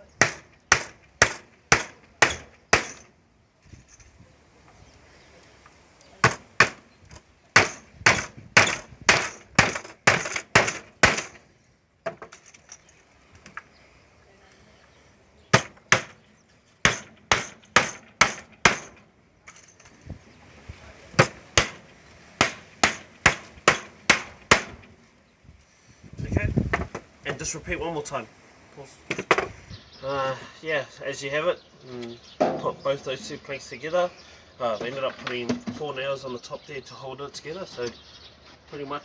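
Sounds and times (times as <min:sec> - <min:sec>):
hammer driving nails into wood: 0:00.2 - 0:03.1, 0:06.2 - 0:11.4, 0:15.5 - 0:16.2, 0:16.8 - 0:19.0, 0:21.2 - 0:21.8, 0:22.4 - 0:24.9.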